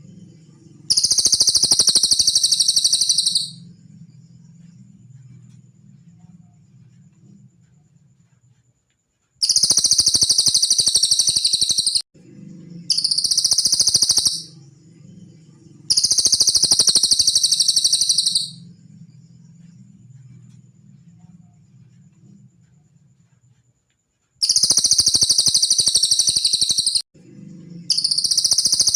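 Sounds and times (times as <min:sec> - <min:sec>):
bird trilling high notes: 0:00.9 - 0:03.6, 0:09.4 - 0:12.0, 0:12.9 - 0:14.6, 0:15.9 - 0:18.6, 0:24.4 - 0:27.0.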